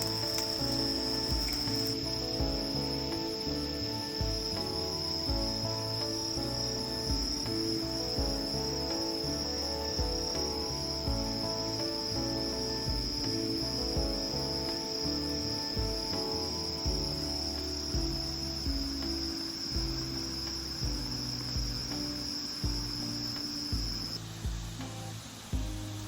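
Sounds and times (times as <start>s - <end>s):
insects trilling: 0.0s - 16.8s
background music with beat: 0.0s - 26.0s.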